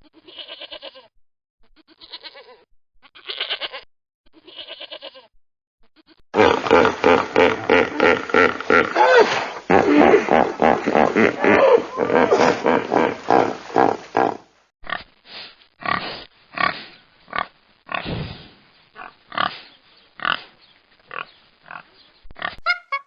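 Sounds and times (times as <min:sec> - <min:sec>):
animal calls: 0:06.4 - 0:14.4.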